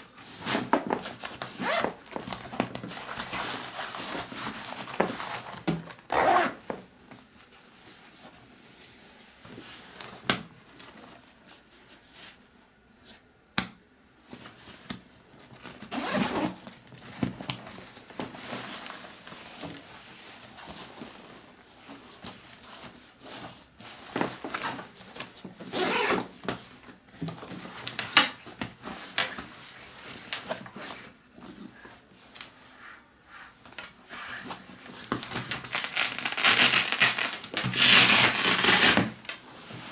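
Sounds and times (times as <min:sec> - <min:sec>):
fabric rustling: 0:32.6 - 0:39.9
zipper-like scrapes: 0:35.7 - 0:39.1.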